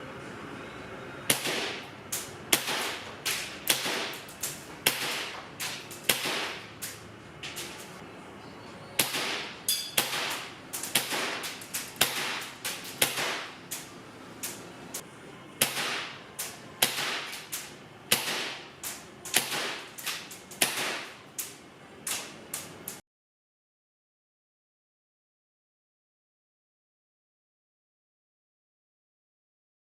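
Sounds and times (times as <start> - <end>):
airsoft gun shots: 1.3 - 6.7, 9.0 - 13.6, 15.6 - 16.2, 16.8 - 18.7, 19.3 - 21.2.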